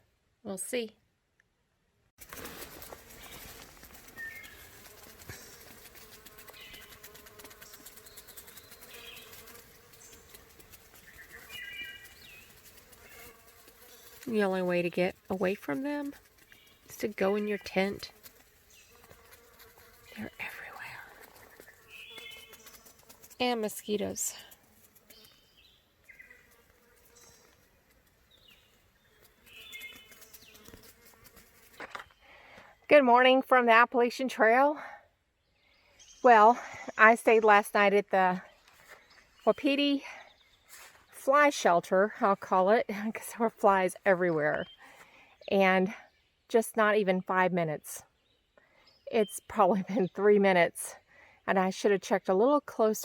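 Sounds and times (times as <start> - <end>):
flies buzzing: 2.2 - 32.6.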